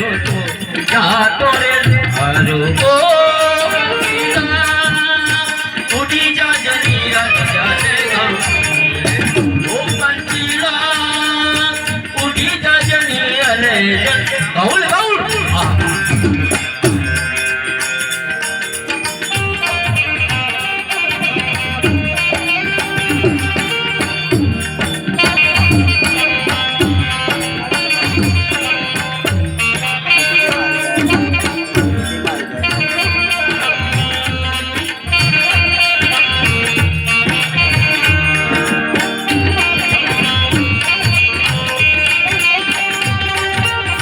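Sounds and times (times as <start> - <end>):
drum strokes: 0.0 - 44.0
sustained melody instrument: 0.0 - 44.0.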